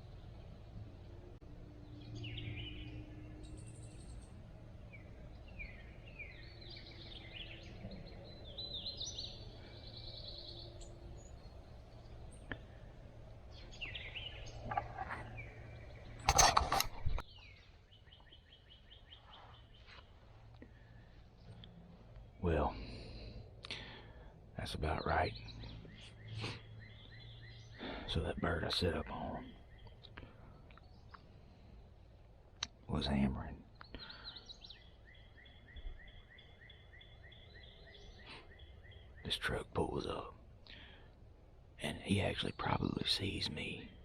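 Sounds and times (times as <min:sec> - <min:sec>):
bird trill: 0:00.0 - 0:20.0, 0:33.0 - 0:41.0
songbirds singing and chirping: 0:00.0 - 0:44.0.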